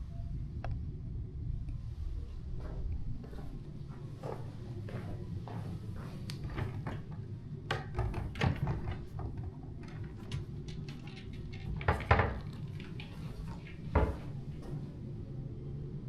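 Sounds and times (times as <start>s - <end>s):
steady low hum: 0.0s - 16.0s
clicks and knocks of objects: 6.3s - 14.8s.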